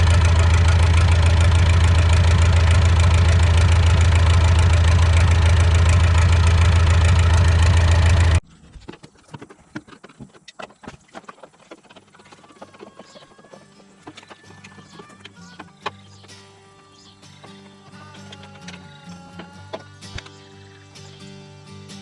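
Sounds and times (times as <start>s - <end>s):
tractor diesel engine idling: 0.0s - 8.4s.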